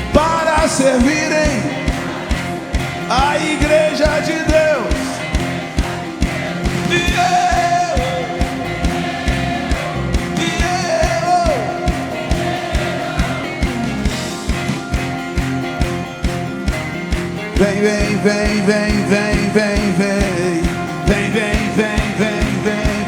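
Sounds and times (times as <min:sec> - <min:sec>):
live band with driving drum beat: 0:00.0 - 0:23.0
voices singing long notes: 0:00.0 - 0:23.0.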